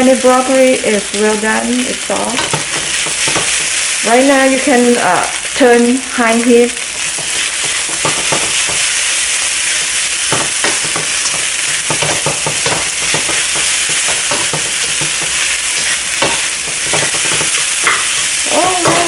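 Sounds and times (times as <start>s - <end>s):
rice sizzling in a hot pan: 0.0s - 19.0s
utensil scraping a pan: 6.9s - 19.0s.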